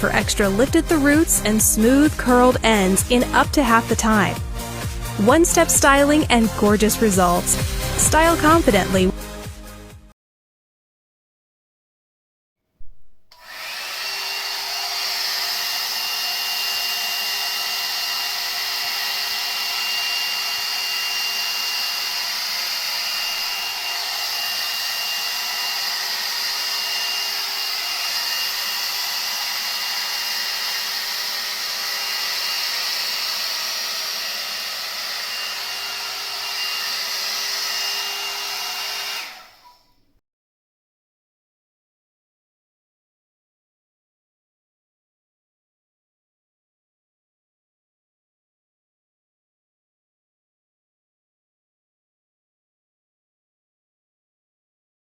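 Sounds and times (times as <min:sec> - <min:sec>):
hot air brush fan: 0:13.3 - 0:40.0.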